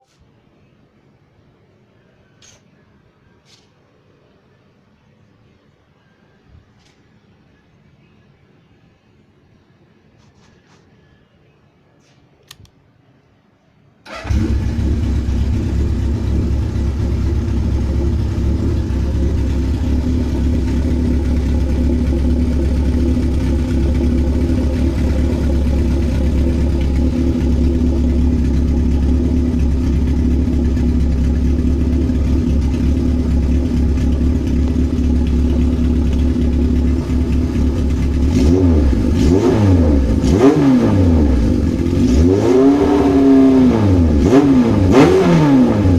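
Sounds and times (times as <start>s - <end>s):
motorcycle engine idling and revving: 14.1s - 45.9s.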